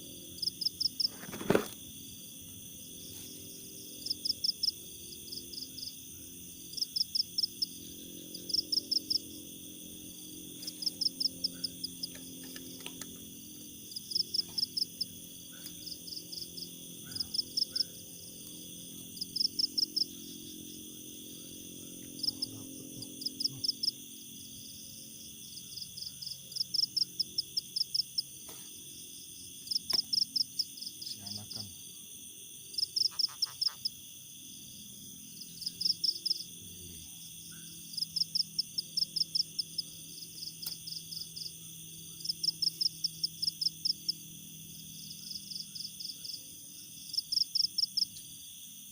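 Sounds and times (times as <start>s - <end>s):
steady high insect drone: 0.0s - 48.9s
frogs high-pitched pulses: 32.8s - 34.0s.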